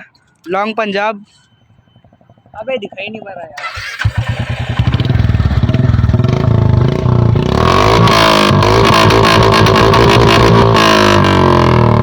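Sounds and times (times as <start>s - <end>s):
motorcycle engine exhaust beats: 4.0s - 12.0s.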